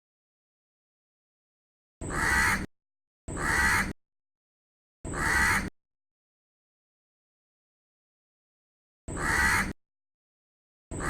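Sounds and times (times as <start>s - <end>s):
crow cawing: 2.1s - 2.7s, 3.4s - 3.9s, 5.1s - 5.7s, 9.2s - 9.7s.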